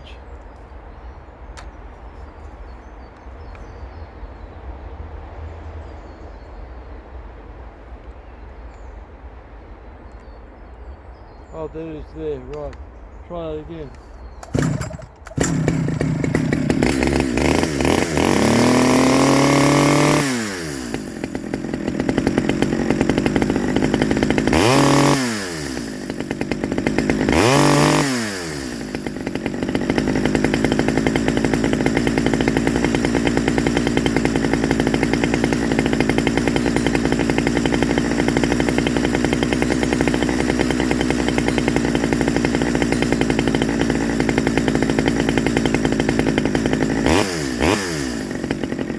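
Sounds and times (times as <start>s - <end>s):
chainsaw engine revving and idling: 11.5s - 48.9s.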